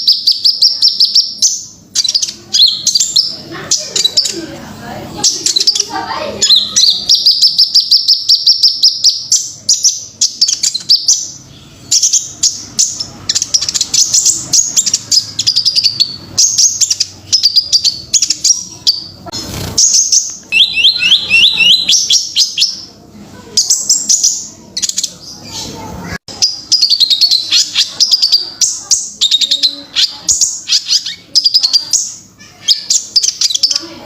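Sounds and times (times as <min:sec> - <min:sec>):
songbird chirping and trilling: 0:00.0 - 0:34.0.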